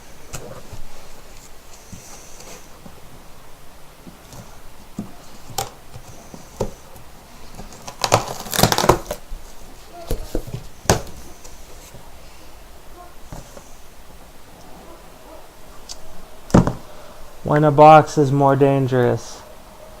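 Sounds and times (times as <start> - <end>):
knife cutting cardboard: 7.5 - 9.2.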